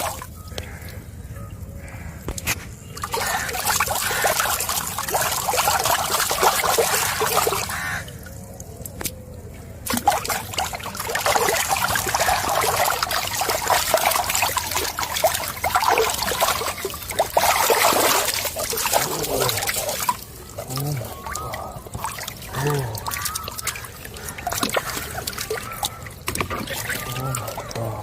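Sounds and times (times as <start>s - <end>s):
water splashing and trickling: 0.0s - 28.0s.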